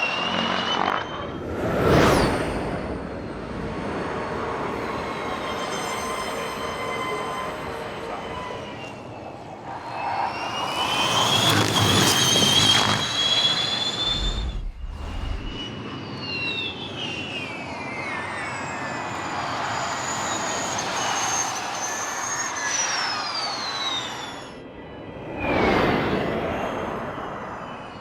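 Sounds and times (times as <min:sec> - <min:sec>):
electric race cars whining: 0:04.5 - 0:16.9
tyre and wind rush: 0:11.4 - 0:15.8.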